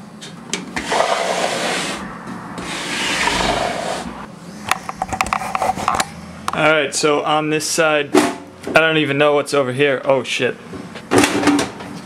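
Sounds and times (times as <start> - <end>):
computer case rubbing and scraping: 0.8 - 4.3, 5.1 - 6.0.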